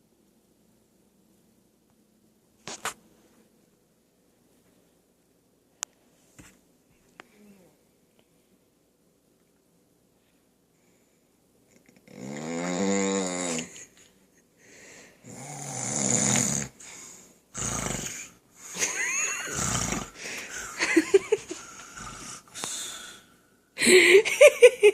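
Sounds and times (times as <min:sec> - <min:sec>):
man snoring: 0:12.1 - 0:13.8, 0:15.2 - 0:20.7.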